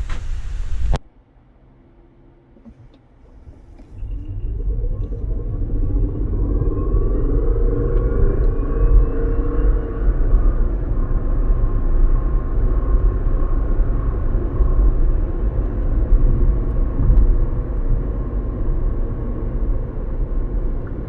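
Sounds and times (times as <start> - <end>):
faint steady whine: 0.0 - 21.0
vehicle rumble: 0.0 - 21.0.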